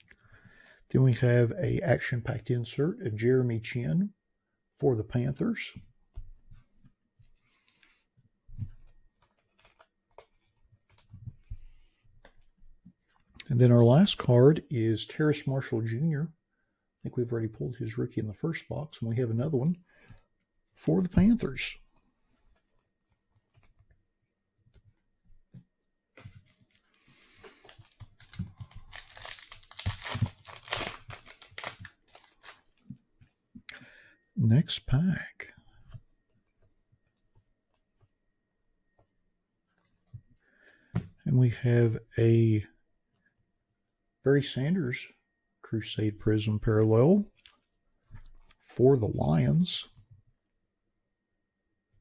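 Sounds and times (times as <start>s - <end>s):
cards clicking and tapping: 8.6s - 12.5s
foil wrapper crinkling: 8.9s - 11.0s, 27.6s - 32.9s.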